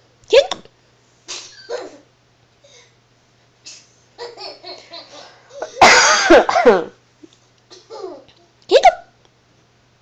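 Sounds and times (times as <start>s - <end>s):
young child laughing loudly: 1.3s - 2.1s, 4.2s - 6.8s.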